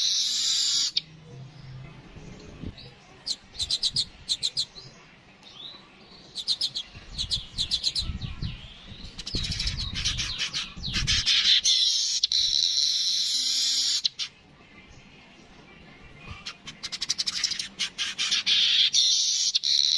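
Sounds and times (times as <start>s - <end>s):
bird singing: 0.0s - 19.9s.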